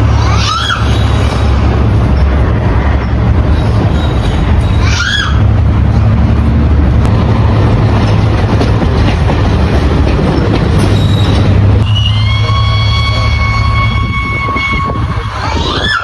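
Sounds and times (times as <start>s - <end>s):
train rumbling: 0.0s - 16.0s
wheels on track: 0.0s - 16.0s
brief squeal: 10.8s - 16.0s.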